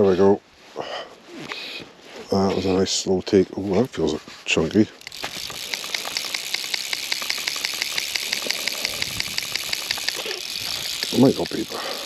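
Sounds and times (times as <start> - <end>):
fly reel ratchet clicking: 5.0 - 12.0.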